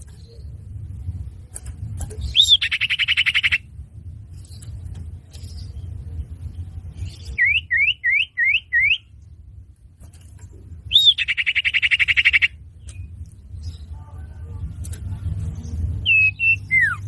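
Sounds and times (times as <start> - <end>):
low steady hum: 0.0 - 17.0
bird whistles and chattering trill: 2.2 - 3.6, 7.1 - 9.1, 10.9 - 13.1, 16.0 - 17.0.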